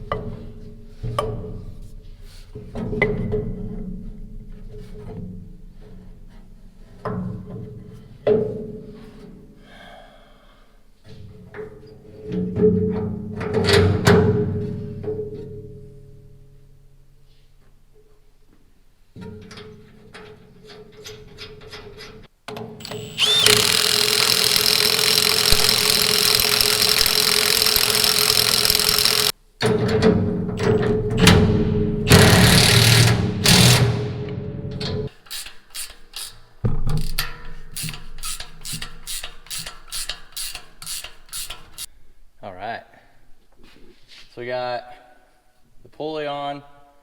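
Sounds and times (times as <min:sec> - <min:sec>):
power tool running: 0:22.8 - 0:29.3, 0:32.1 - 0:34.0
ratchet wrench clicking: 0:22.8 - 0:29.3, 0:35.1 - 0:41.9.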